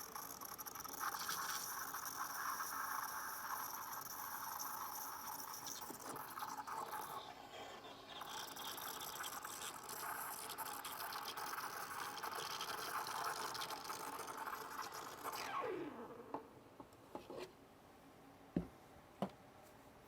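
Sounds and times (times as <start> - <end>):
espresso machine hissing and gurgling: 0.0 - 15.8.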